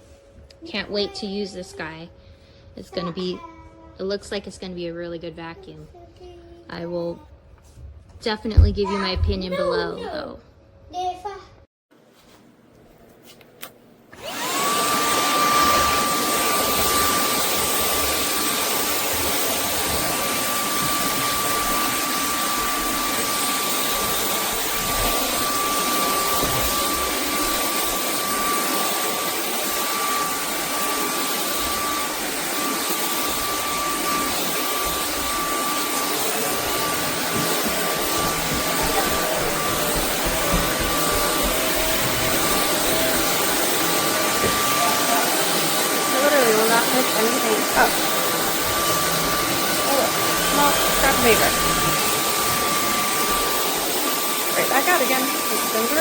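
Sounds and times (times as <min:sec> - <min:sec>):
vacuum motor whining: 0:14.1 - 0:56.0.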